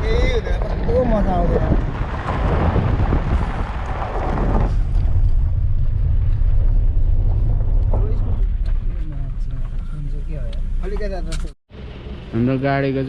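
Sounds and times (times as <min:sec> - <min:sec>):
wind buffeting microphone: 0:00.0 - 0:10.2
vehicle rumbling on dirt road: 0:00.0 - 0:13.0.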